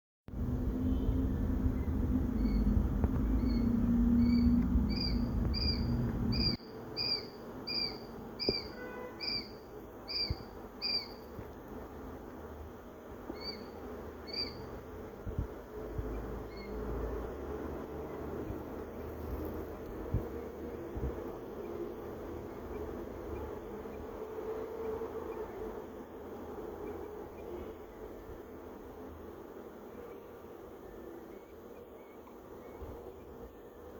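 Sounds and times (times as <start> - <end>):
low hum: 0.3 - 6.6
quail chick peeping: 1.7 - 11.4, 13.3 - 14.8.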